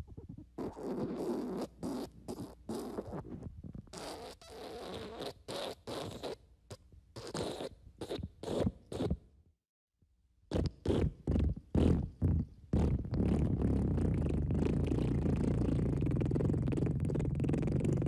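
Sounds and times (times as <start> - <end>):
fart sounds: 0.1 - 6.4, 10.5 - 18.0.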